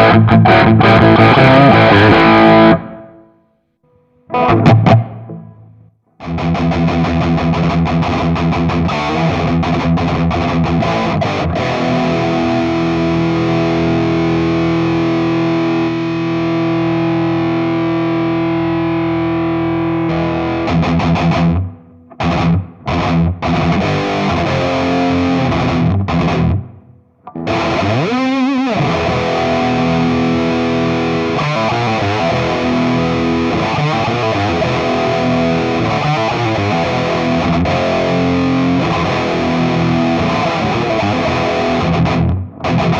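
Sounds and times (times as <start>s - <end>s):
distorted electric guitar: 0.0s - 42.9s.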